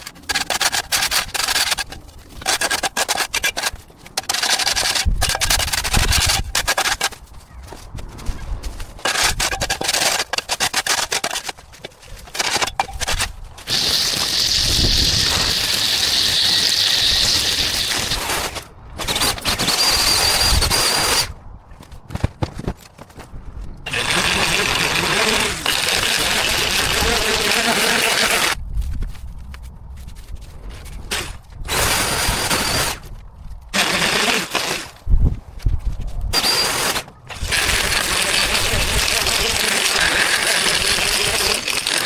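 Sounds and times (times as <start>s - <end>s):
powered garden tool running: 12.4s - 21.2s, 23.9s - 28.6s, 33.8s - 35.0s, 36.4s - 42.0s.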